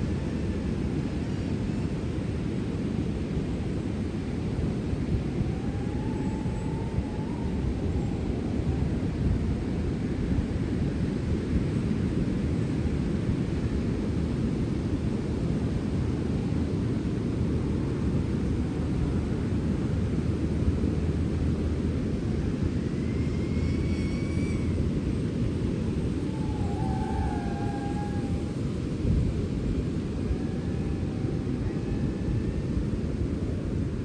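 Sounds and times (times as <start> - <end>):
sea wind rushing: 0.0 - 34.0
faint high-pitched calls: 5.4 - 9.4, 22.4 - 29.0, 30.1 - 32.7.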